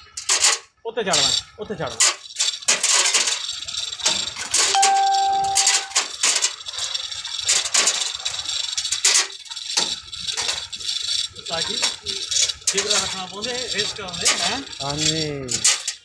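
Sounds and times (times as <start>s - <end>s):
metal parts rattling: 1.2s - 4.7s, 5.8s - 16.0s
brief ringing tone: 4.7s - 6.0s.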